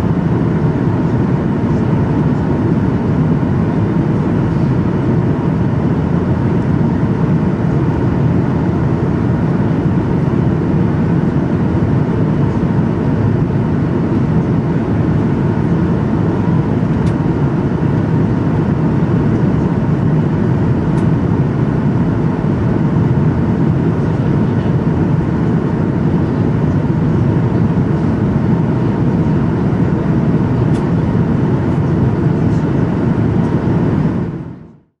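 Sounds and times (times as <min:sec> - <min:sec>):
aircraft engines rumbling: 0:00.0 - 0:34.9.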